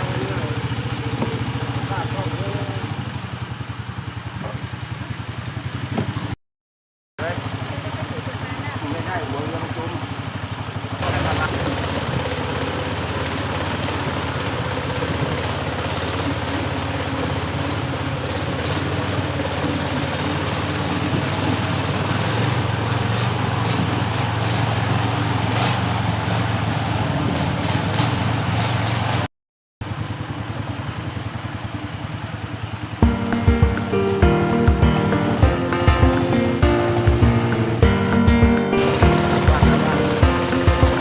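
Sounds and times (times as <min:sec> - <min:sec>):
boat engine running: 0:00.0 - 0:06.4, 0:07.2 - 0:41.0.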